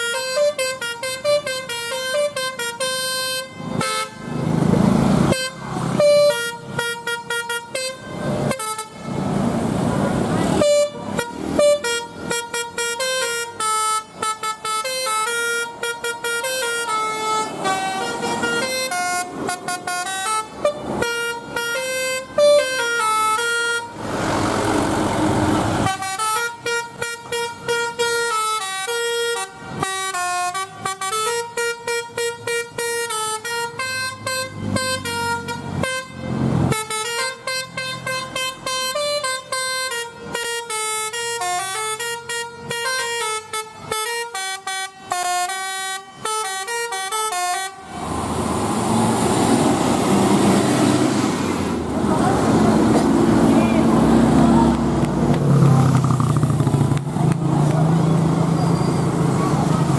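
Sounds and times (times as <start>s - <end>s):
air horns playing melody: 0.0s - 4.4s, 5.2s - 24.0s, 25.8s - 48.1s.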